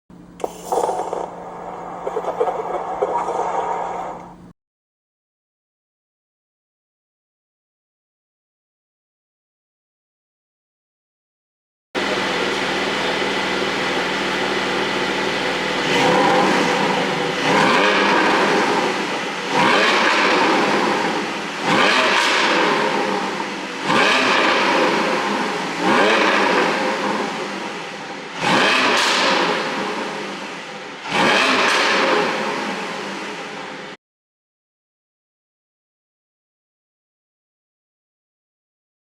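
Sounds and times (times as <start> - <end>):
car engine idling and revving: 12.0 - 33.9.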